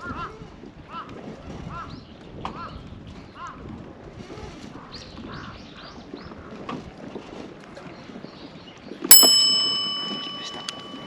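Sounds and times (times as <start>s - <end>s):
metal clink ringing: 9.1s - 11.0s.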